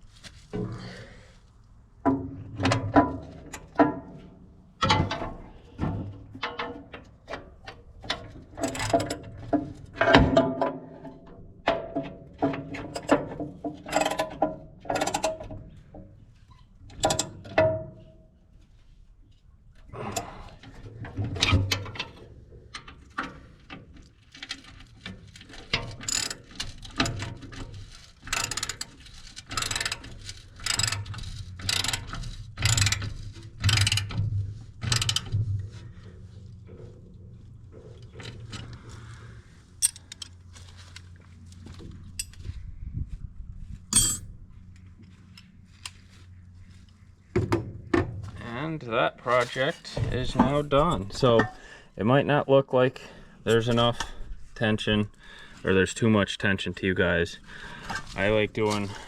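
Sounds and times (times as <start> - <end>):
metallic clicks and clanks of tools: 4.8 - 18.2, 20.0 - 35.4, 39.8 - 41.1, 42.0 - 42.5, 43.9 - 44.3, 50.0 - 51.6.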